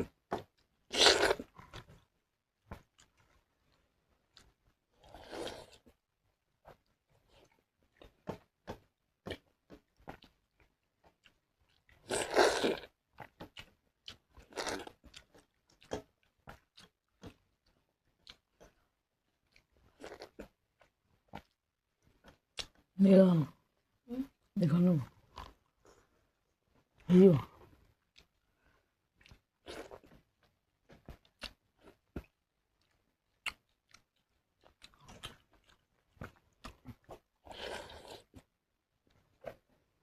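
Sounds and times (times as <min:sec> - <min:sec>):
wet mouth clicks and chewing: 0:06.6 - 0:22.9, 0:27.7 - 0:38.5.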